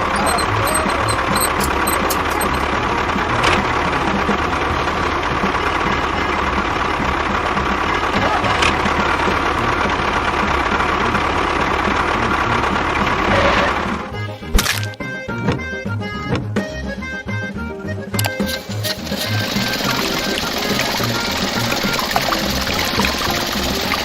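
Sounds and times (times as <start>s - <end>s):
short clicks: 0.0s - 2.7s, 18.2s - 19.2s
small motor whining and rattling: 0.0s - 2.8s, 18.2s - 24.0s.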